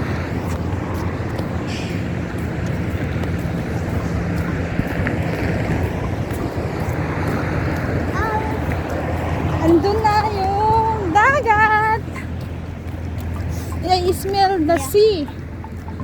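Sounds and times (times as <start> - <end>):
wind on microphone: 0.0 - 11.2
road traffic rumble: 0.0 - 16.0.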